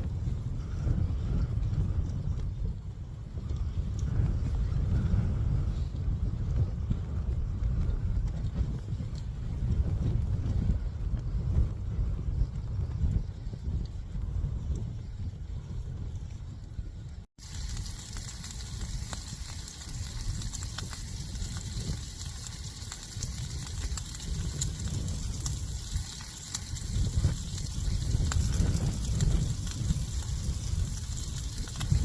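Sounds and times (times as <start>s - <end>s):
strong wind gusting: 0.0s - 32.0s
food sizzling in frying pan: 17.4s - 32.0s.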